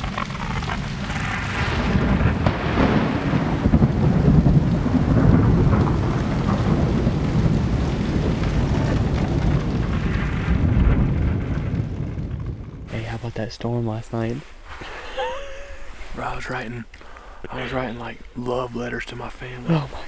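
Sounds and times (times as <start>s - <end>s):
loud low thunder rumble: 0.0s - 13.6s
rain: 0.0s - 20.0s
wind: 0.0s - 20.0s.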